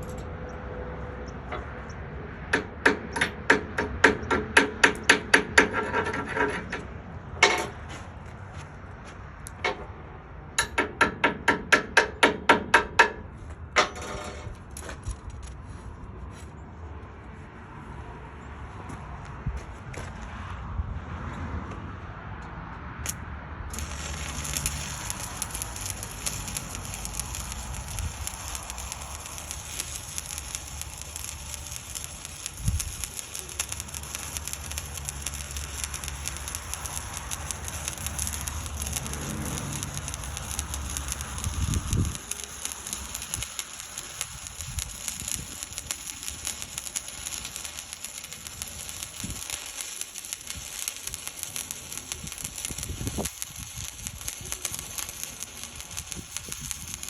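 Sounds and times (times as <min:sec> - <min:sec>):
welding arc crackling: 0:23.1 - 0:57.0.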